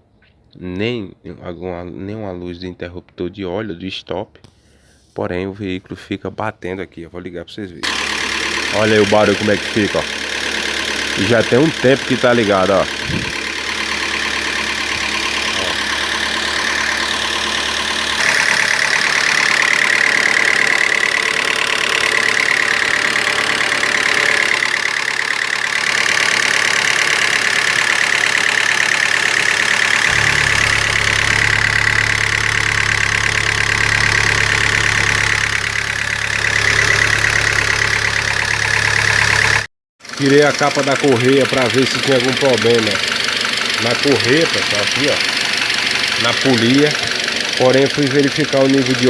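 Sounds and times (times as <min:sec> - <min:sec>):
car engine idling: 0:07.8 - 0:49.0
fast mechanical engine knocking: 0:07.8 - 0:49.0
deep hum: 0:07.9 - 0:39.7.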